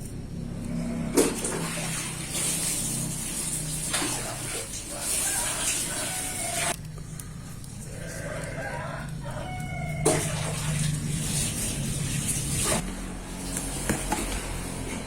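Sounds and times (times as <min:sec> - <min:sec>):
steady low hum: 0:06.7 - 0:10.1.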